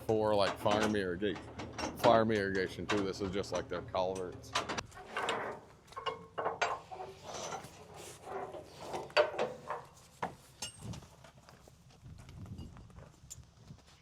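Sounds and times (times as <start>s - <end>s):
strap buckles clanking: 0.0s - 11.2s.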